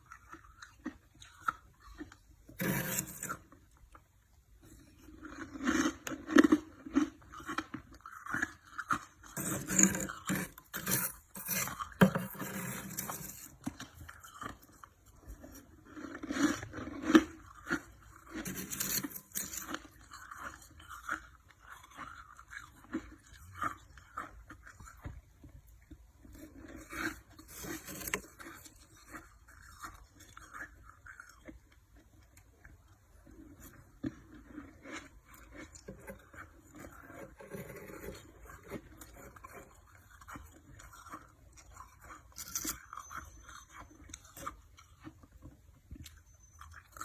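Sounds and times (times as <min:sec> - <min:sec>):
frost crunching and scraping: 0:00.0 - 0:03.7, 0:04.8 - 0:23.4, 0:26.4 - 0:31.4.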